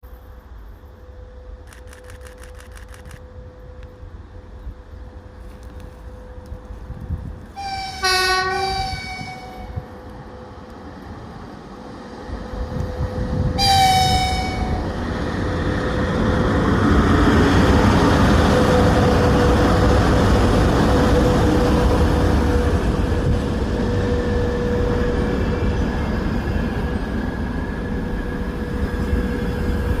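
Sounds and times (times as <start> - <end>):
train wheels rumbling on rails: 0.0 - 30.0
locomotive horn blasts: 7.6 - 10.0, 13.6 - 14.9.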